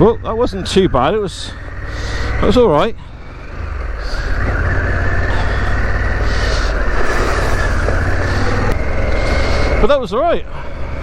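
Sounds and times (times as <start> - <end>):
motorcycle engine running: 0.0 - 11.0
steady rushing noise: 5.3 - 11.0.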